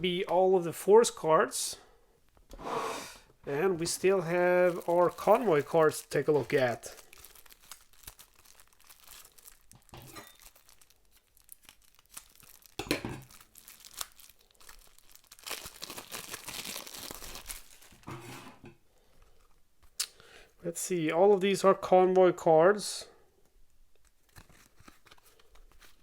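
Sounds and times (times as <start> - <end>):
shrink-wrap crinkling and tearing: 3.6 - 18.1, 23.9 - 26.0.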